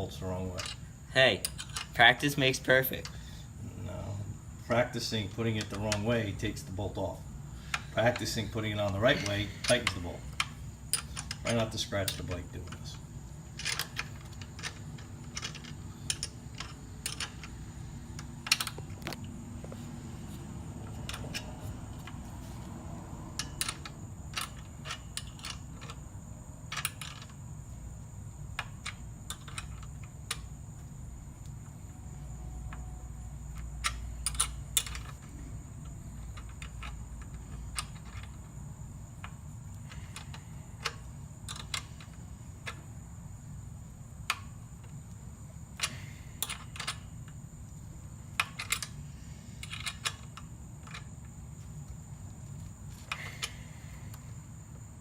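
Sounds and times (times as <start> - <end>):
steady low hum: 0.0 - 55.0
hand tools clicking on metal: 0.5 - 3.2, 7.6 - 13.0, 13.6 - 17.6, 23.3 - 26.0, 45.8 - 47.4.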